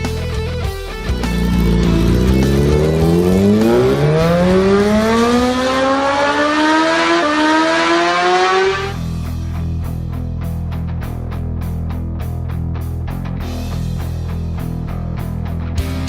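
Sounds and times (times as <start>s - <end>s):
motorcycle engine accelerating: 0.9s - 9.8s.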